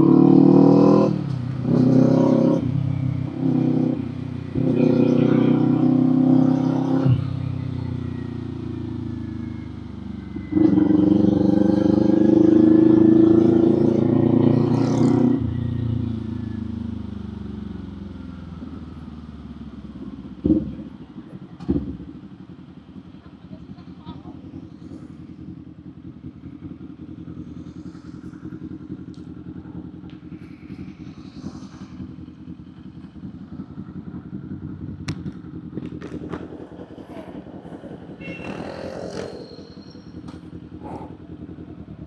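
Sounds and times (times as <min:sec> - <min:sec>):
motorcycle engine revving: 0:00.0 - 0:42.0
exhaust pops: 0:34.8 - 0:37.4.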